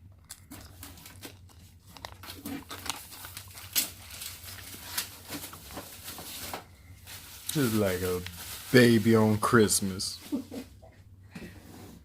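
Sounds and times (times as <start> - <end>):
packaging rustling and clicking: 0.4 - 8.9.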